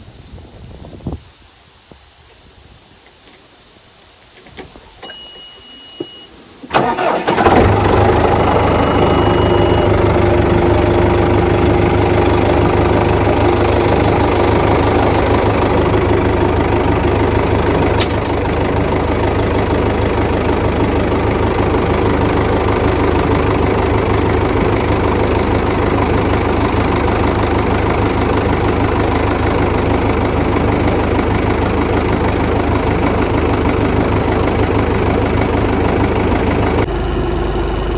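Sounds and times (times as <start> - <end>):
short high beep: 5.1 - 6.3, 8.7 - 10.3
engine cranking: 6.6 - 36.8
tractor engine idling: 6.6 - 37.9.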